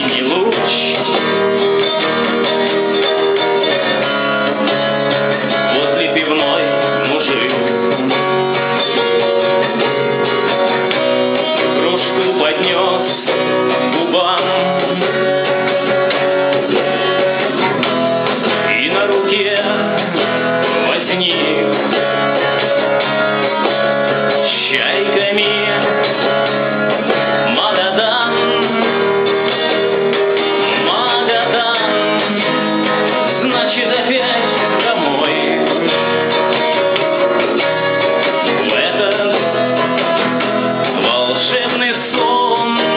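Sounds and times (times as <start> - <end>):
guitar music: 0.0 - 42.9.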